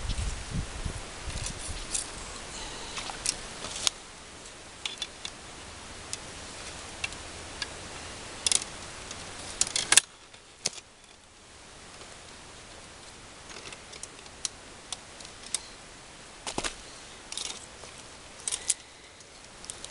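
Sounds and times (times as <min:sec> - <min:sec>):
steady hiss: 0:00.0 - 0:19.9.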